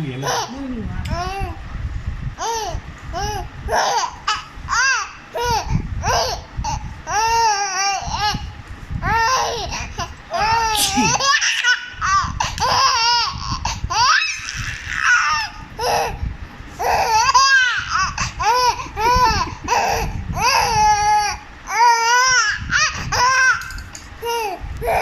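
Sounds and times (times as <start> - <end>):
child giggling: 10.7 - 11.6, 18.9 - 20.1.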